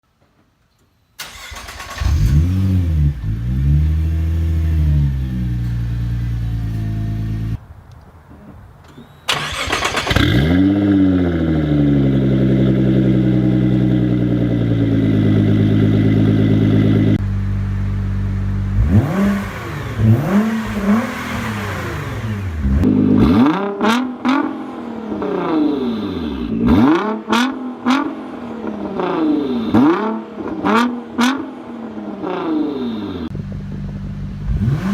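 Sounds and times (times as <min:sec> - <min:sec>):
car engine starting and idling: 0:01.2 - 0:07.6, 0:09.3 - 0:34.9
engine free revs: 0:01.2 - 0:07.6, 0:09.3 - 0:15.5, 0:18.7 - 0:33.3, 0:34.4 - 0:34.9.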